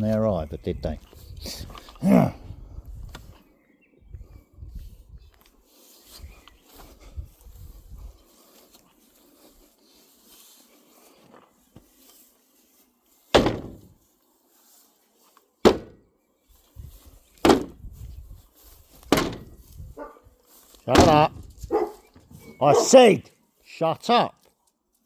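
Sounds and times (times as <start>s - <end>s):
quiet rustling: 4.8s - 23.1s
dog barking: 20.0s - 20.2s, 21.7s - 23.0s.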